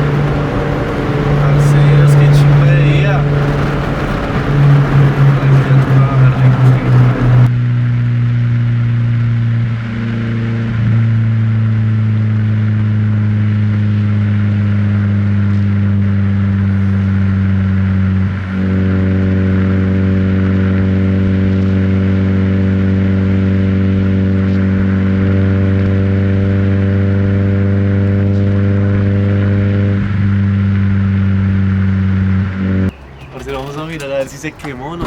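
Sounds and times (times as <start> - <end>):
car exhaust drone: 0.0 - 35.0.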